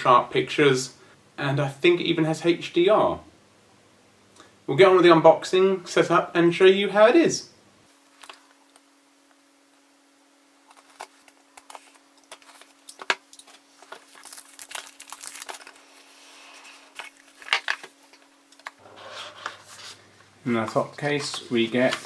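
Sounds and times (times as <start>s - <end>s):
plastic wrap crinkling and tearing: 10.6s - 18.8s.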